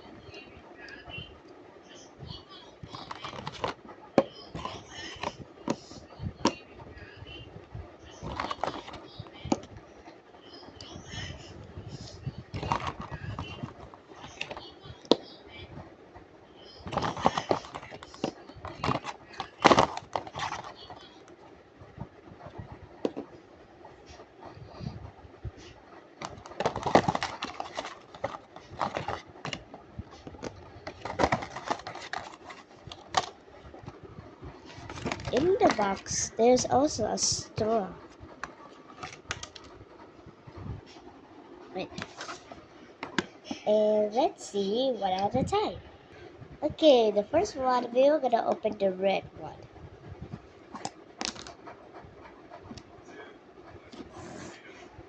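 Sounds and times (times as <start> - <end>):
plastic containers clicking and knocking: 2.9 - 5.8, 8.3 - 9.7, 12.6 - 15.2, 16.9 - 20.7, 26.2 - 33.4, 34.7 - 36.0, 39.0 - 39.7, 50.8 - 51.5.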